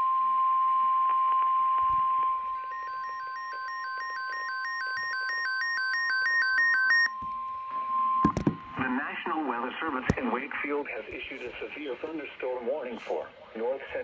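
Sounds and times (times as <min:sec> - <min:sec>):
steady warning alarm tone: 0:02.6 - 0:09.0.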